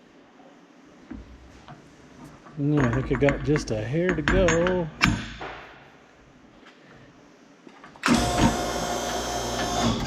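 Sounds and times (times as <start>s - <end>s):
hydraulic pump whining: 8.0s - 10.0s.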